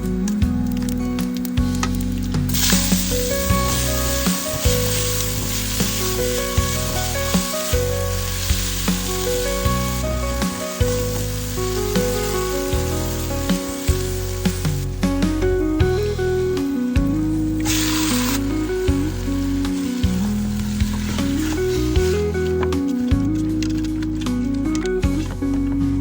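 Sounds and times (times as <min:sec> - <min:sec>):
background music with beat: 0:00.0 - 0:26.0
food sizzling in oil: 0:01.7 - 0:23.0.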